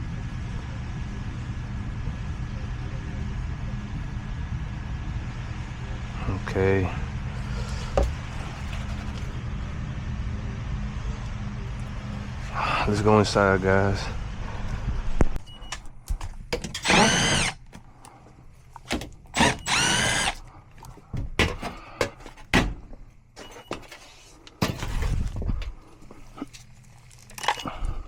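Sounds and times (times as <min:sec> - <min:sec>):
cordless drill spinning: 0:16.8 - 0:17.7, 0:19.3 - 0:20.5.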